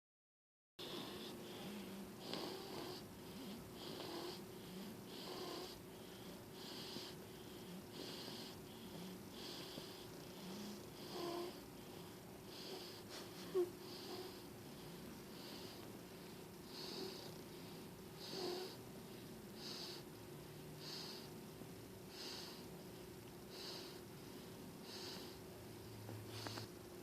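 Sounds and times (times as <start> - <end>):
baby snoring: 0.8 - 18.8, 19.6 - 20.1, 20.8 - 21.3, 22.1 - 22.7, 24.8 - 25.4.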